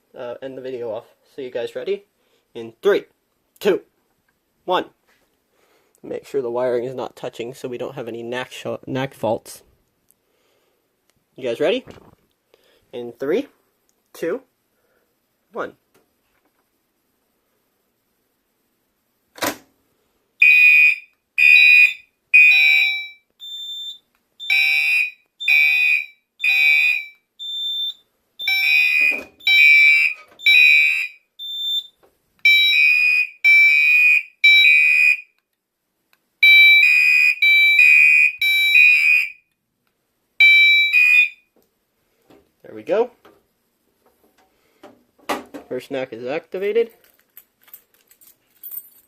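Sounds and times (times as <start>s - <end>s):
fire alarm horn blasts: 20.4s - 35.3s, 36.4s - 39.4s, 40.4s - 41.5s.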